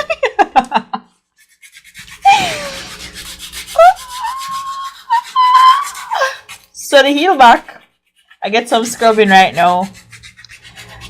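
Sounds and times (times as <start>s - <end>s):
heel scrubber rasping on skin: 1.4s - 11.0s
high-pitched vocal squeal: 2.3s - 2.9s, 3.8s - 6.5s.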